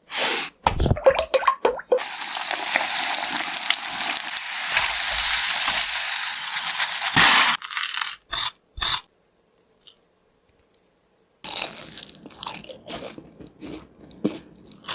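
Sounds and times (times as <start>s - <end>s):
chicken sizzling in hot oil: 2.0s - 7.6s
crunching and chewing fried chicken: 11.5s - 14.9s.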